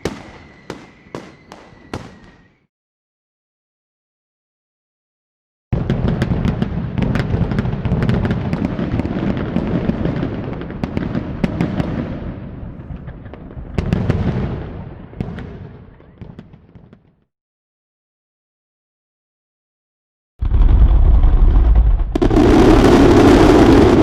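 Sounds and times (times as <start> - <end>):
deep rumble with cracks and pops: 20.4 - 24.0.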